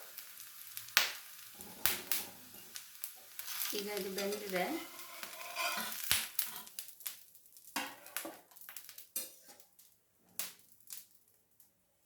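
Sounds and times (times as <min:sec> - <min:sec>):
spatula scraping a griddle pan: 0:01.6 - 0:06.8, 0:09.2 - 0:09.7.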